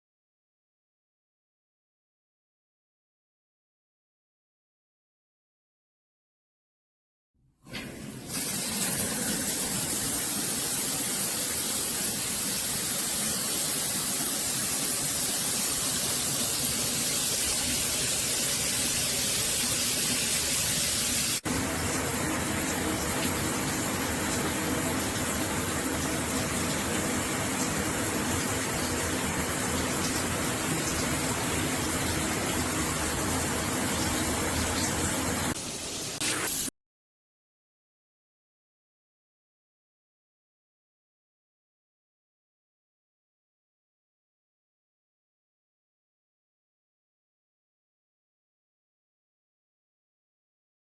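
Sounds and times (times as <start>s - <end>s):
shower water spraying: 7.7s - 36.7s.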